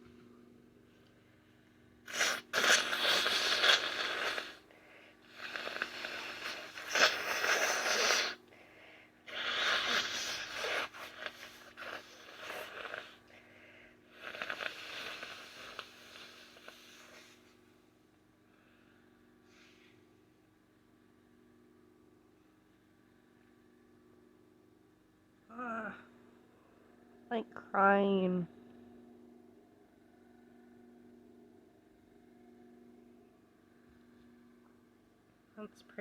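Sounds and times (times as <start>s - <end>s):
woman sneezing: 2.1s - 4.6s.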